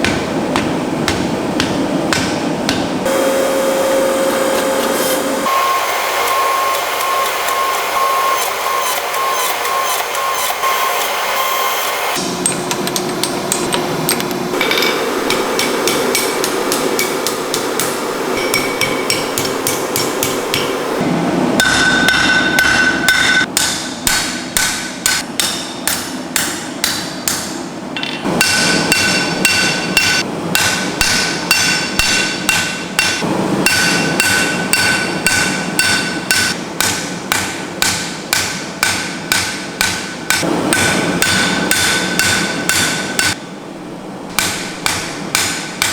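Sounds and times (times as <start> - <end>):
hammer blows on anvil: 21.6 - 43.4.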